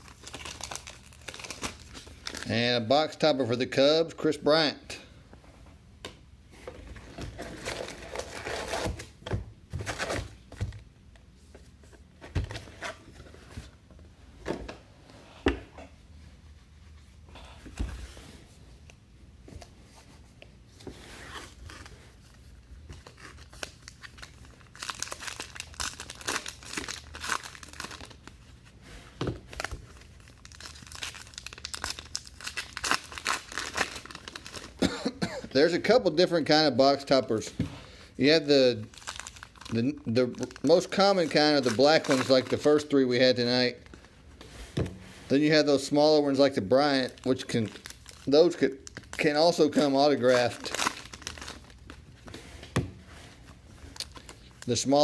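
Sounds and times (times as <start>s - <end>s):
cards and packaging handled: 0.0s - 2.5s, 19.5s - 34.8s, 38.8s - 55.0s
wrappers tearing and crinkling: 0.0s - 2.6s, 23.0s - 28.4s, 29.6s - 34.8s, 38.8s - 43.0s, 46.2s - 52.0s, 53.9s - 55.0s.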